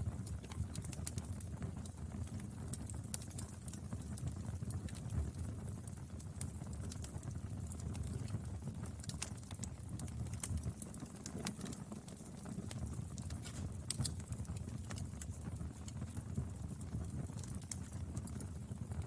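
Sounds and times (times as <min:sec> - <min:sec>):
low steady fire rumble: 0:00.0 - 0:19.0
wood fire crackling and popping: 0:00.0 - 0:19.0.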